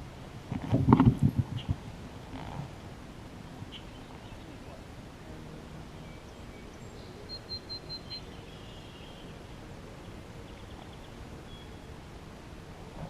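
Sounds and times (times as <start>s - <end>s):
outdoor background hiss: 0.0s - 13.0s
small bird calling: 3.7s - 4.8s.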